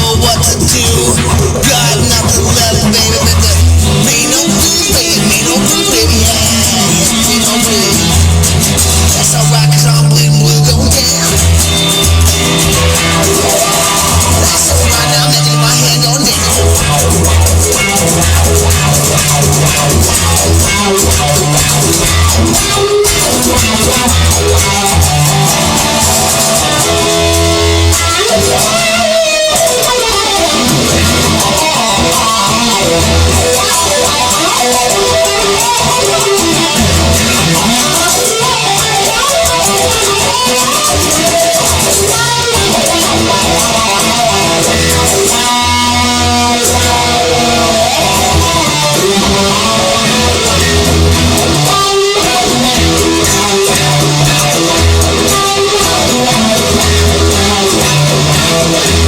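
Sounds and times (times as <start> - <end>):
blues guitar playing: 0.0 - 59.0
steady bass line: 0.0 - 59.0.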